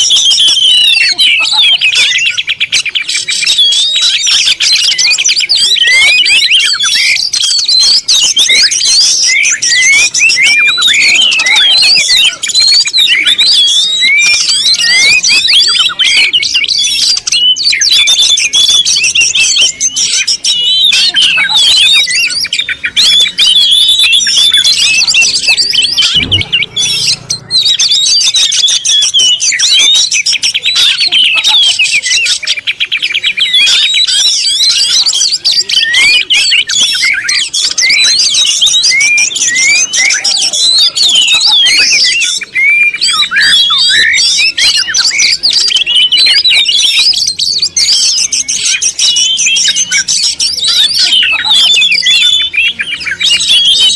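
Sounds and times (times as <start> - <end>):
flock of birds chirping: 0.0 - 53.9
low thump: 26.0 - 27.4.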